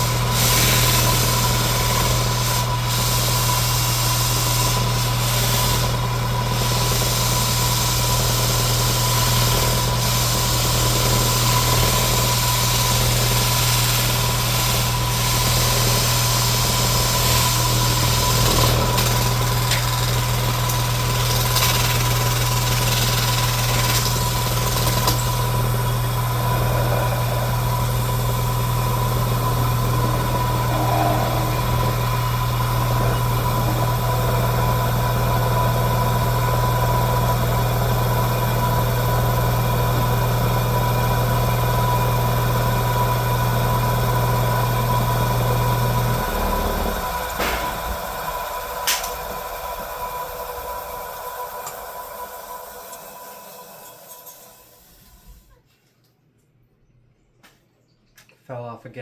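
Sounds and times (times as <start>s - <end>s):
electric sander motor: 24.3s - 38.0s.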